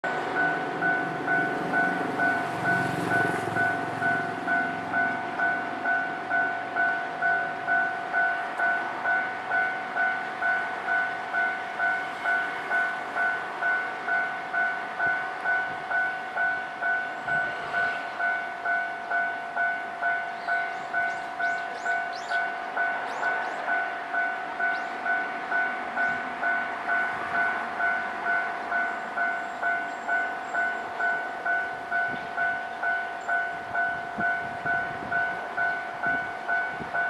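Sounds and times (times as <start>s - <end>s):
two-tone level-crossing bell: 0.0s - 37.0s.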